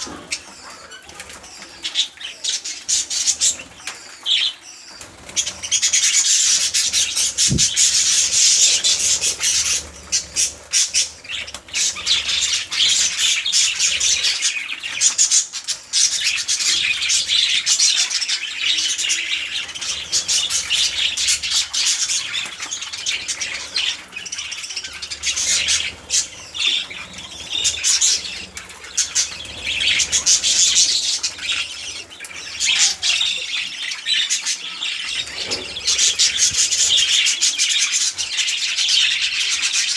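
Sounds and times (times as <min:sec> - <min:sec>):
budgerigars chattering and warbling: 0:00.0 - 0:39.9
wings flapping: 0:04.9 - 0:14.5, 0:35.1 - 0:38.5.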